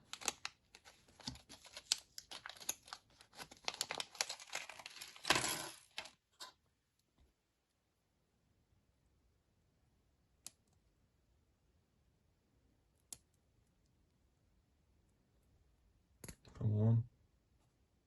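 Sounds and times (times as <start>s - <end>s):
plastic packaging crinkling: 0.0s - 6.2s
plastic bag tearing: 1.2s - 6.2s.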